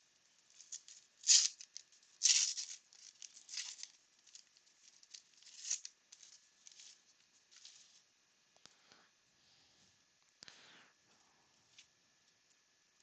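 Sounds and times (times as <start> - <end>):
cards being handled: 0.4 - 8.0
wrapper crinkling and tearing: 0.5 - 7.8.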